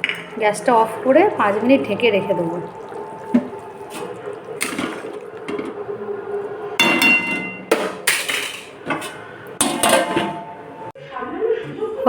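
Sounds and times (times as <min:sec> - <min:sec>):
utensils clinking against metal pot: 0:02.6 - 0:10.9.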